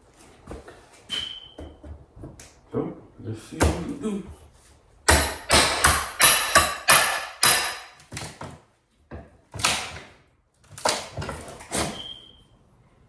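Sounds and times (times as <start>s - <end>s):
brief high squeak: 1.1s - 1.7s, 11.8s - 12.5s
hammer striking wood: 5.1s - 8.4s, 9.6s - 10.1s.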